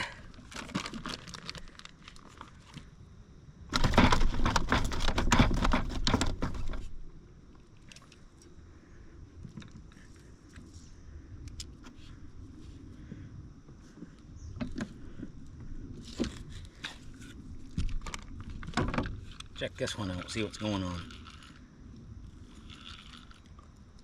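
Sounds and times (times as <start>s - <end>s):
loud clattering and rustling: 3.7s - 6.9s
light clicks and rattles: 16.0s - 21.6s.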